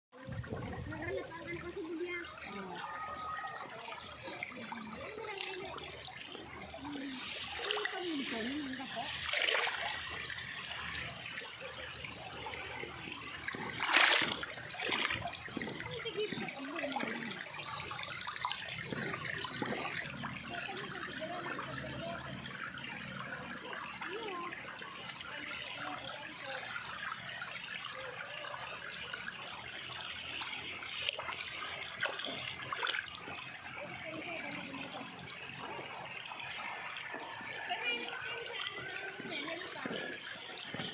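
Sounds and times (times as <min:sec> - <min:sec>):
water surge: 0:00.2 - 0:24.5
river water flowing: 0:00.2 - 0:40.9.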